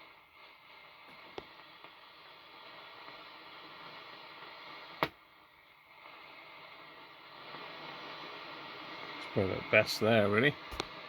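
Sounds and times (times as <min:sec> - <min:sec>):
radio static hiss: 0:00.0 - 0:11.0
radio tuning clicks: 0:09.2 - 0:11.0.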